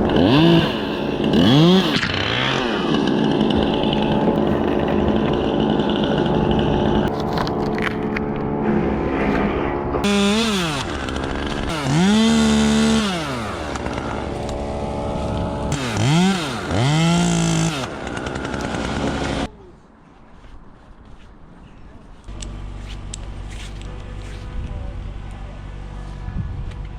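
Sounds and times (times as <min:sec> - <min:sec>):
chainsaw idling and revving: 0:00.0 - 0:07.1, 0:10.0 - 0:19.5.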